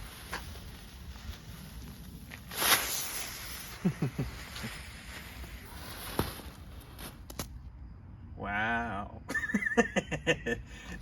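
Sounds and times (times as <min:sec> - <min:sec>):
firework hissing: 0:00.0 - 0:07.6.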